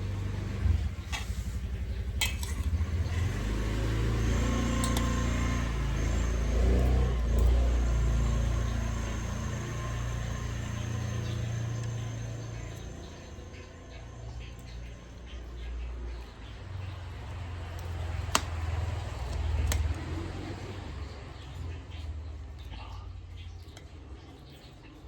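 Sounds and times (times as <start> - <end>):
motorcycle engine rumbling: 0.0 - 24.8
light metallic clinks: 4.6 - 5.4.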